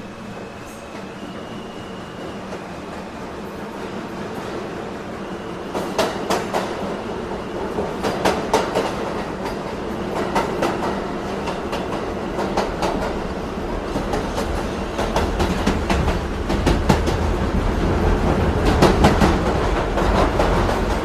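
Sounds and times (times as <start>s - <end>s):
subway train rumble: 0.0s - 21.0s.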